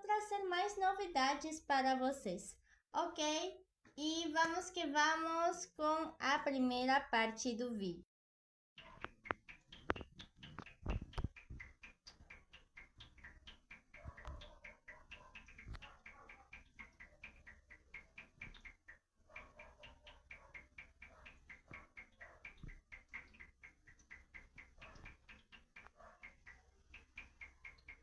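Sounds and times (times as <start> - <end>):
water drops dripping: 8.8 - 28.0.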